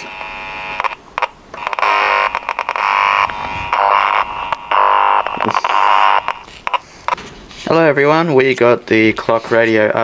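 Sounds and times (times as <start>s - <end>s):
distorted speaker buzz: 0.0s - 7.2s.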